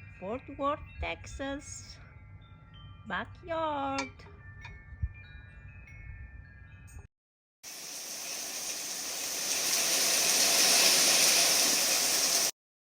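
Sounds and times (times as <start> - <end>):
wind chimes ringing: 0.0 - 7.1
heavy rain pouring: 7.7 - 12.5.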